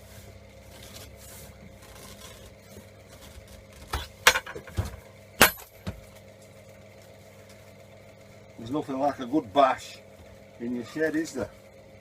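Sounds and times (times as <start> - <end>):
hammer clanking on metal: 5.4 - 5.8.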